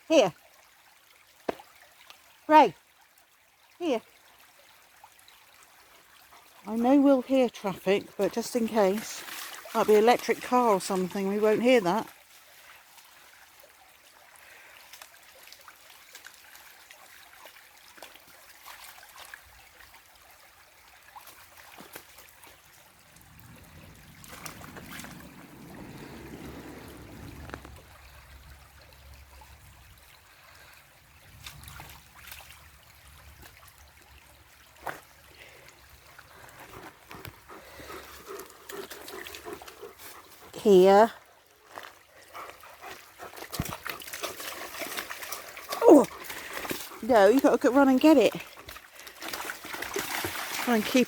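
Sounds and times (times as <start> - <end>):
river trickling over stones: 0.0 - 51.0
low rumble: 22.7 - 29.9.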